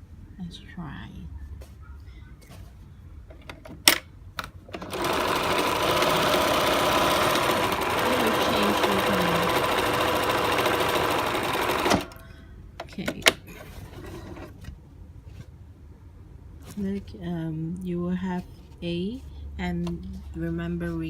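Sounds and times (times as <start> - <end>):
sewing machine stitching: 4.7 - 12.2.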